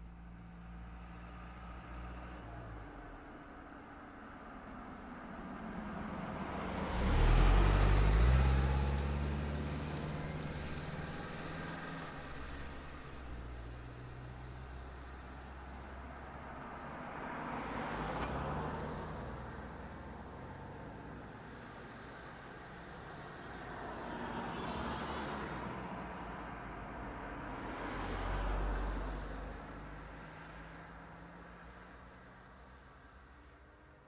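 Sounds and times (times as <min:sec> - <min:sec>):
cars driving past: 0:05.6 - 0:22.0, 0:22.8 - 0:31.6.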